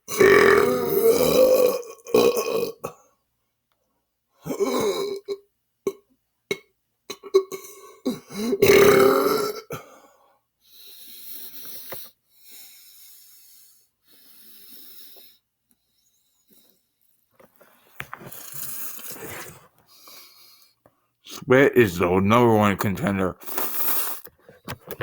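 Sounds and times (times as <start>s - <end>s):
man burping: 0.0s - 3.0s, 4.4s - 10.0s.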